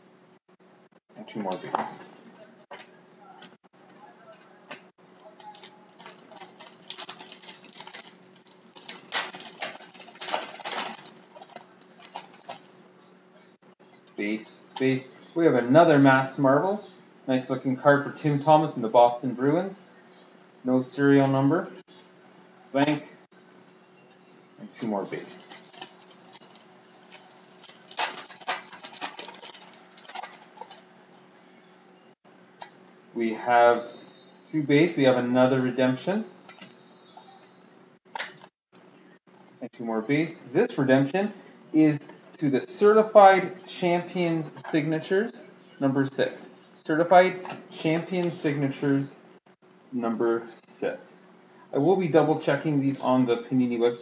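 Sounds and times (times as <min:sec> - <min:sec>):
cards and wrapper rustling: 0:05.2 - 0:12.8, 0:25.3 - 0:31.4.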